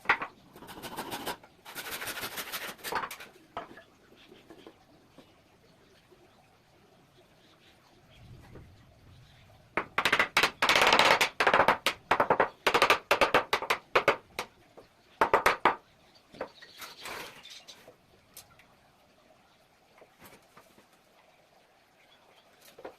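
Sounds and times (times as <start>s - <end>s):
hammering on wood: 9.8s - 14.5s, 15.2s - 15.8s.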